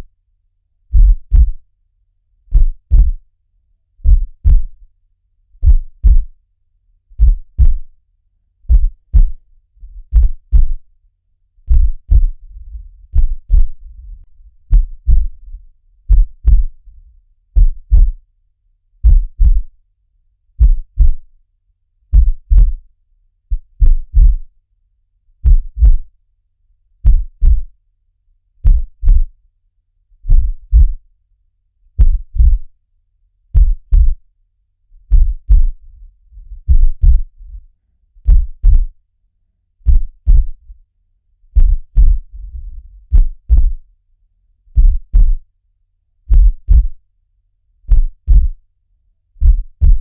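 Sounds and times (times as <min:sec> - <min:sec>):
heartbeat thumps: 0:00.9 - 0:01.6, 0:02.5 - 0:03.2, 0:04.0 - 0:04.8, 0:05.6 - 0:06.3, 0:07.2 - 0:07.9, 0:08.7 - 0:10.9, 0:11.6 - 0:16.9, 0:17.5 - 0:18.2, 0:19.0 - 0:19.8, 0:20.6 - 0:21.3, 0:22.1 - 0:22.8, 0:23.5 - 0:24.5, 0:25.4 - 0:26.1, 0:27.0 - 0:27.7, 0:28.6 - 0:29.3, 0:30.3 - 0:31.0, 0:32.0 - 0:32.7, 0:33.6 - 0:34.2, 0:35.1 - 0:35.8, 0:36.4 - 0:39.0, 0:39.8 - 0:40.7, 0:41.6 - 0:43.8, 0:44.8 - 0:45.4, 0:46.3 - 0:47.0, 0:47.9 - 0:48.6, 0:49.4 - 0:50.0.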